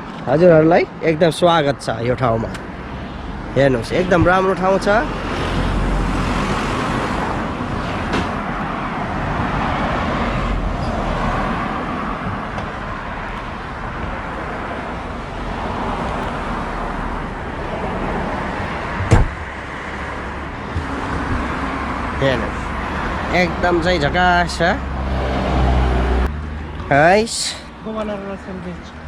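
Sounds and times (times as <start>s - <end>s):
car road and engine noise: 0.0s - 29.0s
sharp knock: 19.0s - 19.4s.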